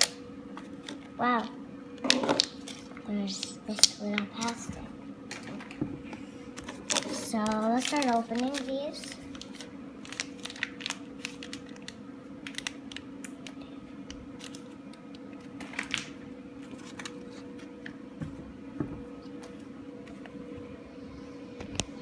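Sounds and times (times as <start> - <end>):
plastic packets crinkling: 0.0 - 4.7, 6.6 - 17.6
steady low hum: 0.0 - 22.0.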